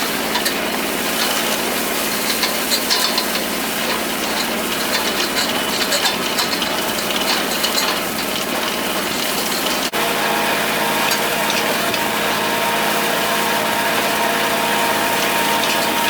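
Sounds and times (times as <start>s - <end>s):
hay tedder rotors rattling: 0.0s - 16.0s
tractor engine humming: 0.0s - 16.0s.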